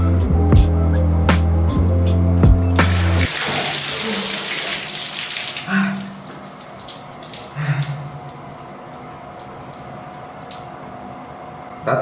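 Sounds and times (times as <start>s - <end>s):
water tap running: 2.8s - 11.6s.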